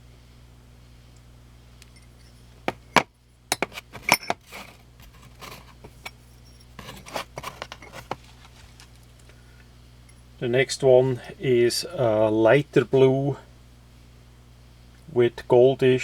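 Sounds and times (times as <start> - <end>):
metal knife scales clinking: 1.9 - 4.3.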